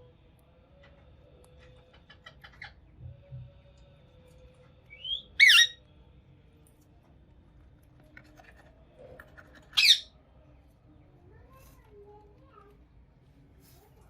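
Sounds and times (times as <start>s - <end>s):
parrot whistling and screeching: 4.9s - 5.8s, 9.7s - 10.1s.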